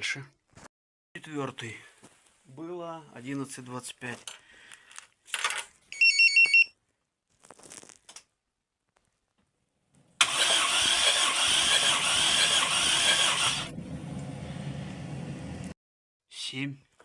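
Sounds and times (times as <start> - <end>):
engine starter cranking: 10.2 - 13.7.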